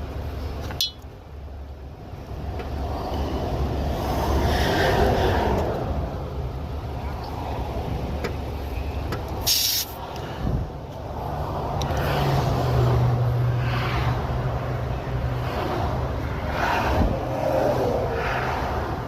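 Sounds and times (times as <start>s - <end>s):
highway traffic passing: 0.0s - 19.0s
short sharp hiss: 9.4s - 10.0s.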